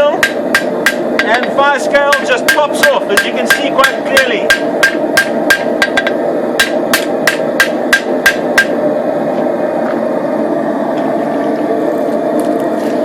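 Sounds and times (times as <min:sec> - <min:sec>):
steady rushing noise: 0:00.0 - 0:11.8
hammer striking blade on anvil: 0:00.2 - 0:08.8.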